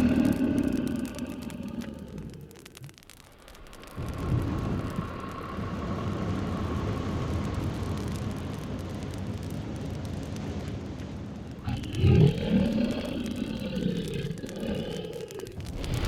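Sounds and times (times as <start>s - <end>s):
low rumbling dragon breath: 0.0s - 2.7s, 4.0s - 8.0s, 11.6s - 16.0s.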